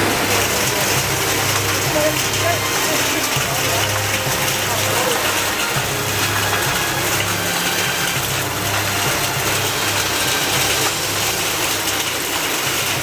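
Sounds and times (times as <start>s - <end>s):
heavy rain and hail: 0.0s - 13.0s.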